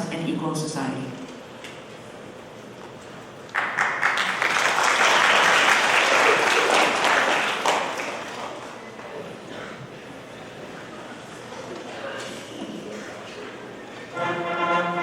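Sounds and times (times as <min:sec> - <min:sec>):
audience applauding: 0:03.5 - 0:08.8.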